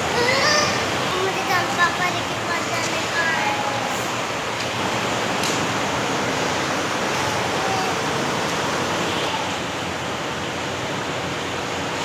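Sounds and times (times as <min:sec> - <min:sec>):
steady rushing noise: 0:00.0 - 0:12.0.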